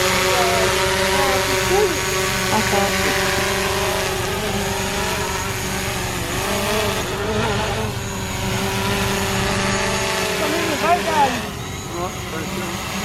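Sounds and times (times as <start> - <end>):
drone propellers whining: 0.0 - 13.0
low rumble: 0.7 - 10.4.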